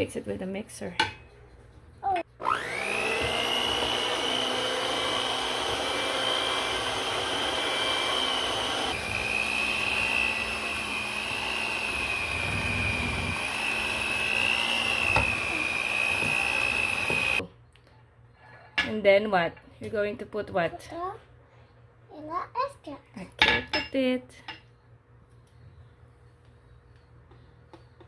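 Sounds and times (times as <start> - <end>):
electric mixer whining: 2.4 - 17.4.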